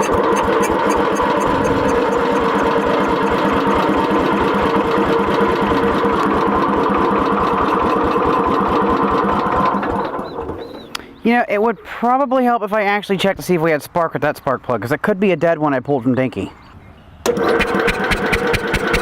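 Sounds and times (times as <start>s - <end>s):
engine cranking by starter: 0.0s - 11.2s, 17.2s - 19.0s.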